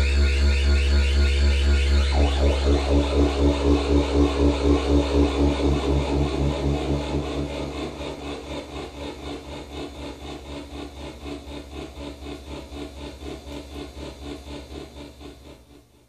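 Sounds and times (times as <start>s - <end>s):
raspy pulsing synthesizer tone: 0.6s - 10.5s
steady low hum: 1.5s - 13.7s.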